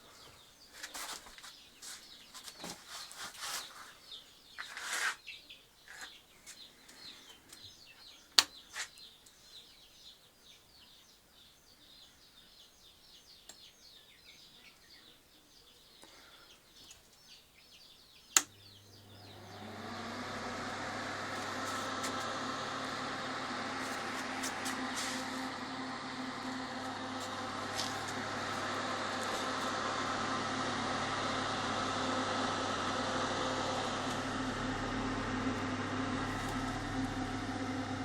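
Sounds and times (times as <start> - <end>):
chicks peeping: 0.1 - 20.1
motor hum: 18.1 - 38.0.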